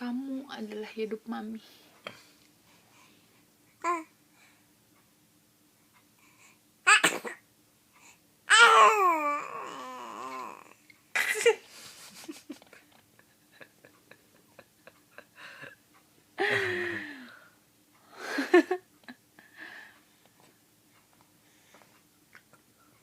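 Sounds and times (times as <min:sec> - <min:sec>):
baby squealing and babbling: 0:08.5 - 0:10.7.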